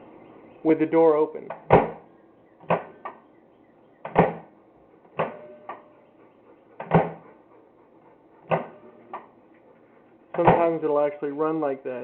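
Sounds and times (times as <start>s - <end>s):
microwave humming: 0.0s - 6.2s, 8.5s - 9.6s.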